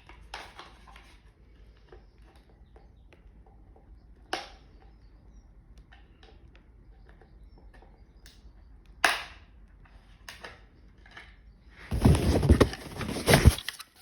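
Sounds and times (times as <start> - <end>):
loud handling noise: 11.9 - 13.9.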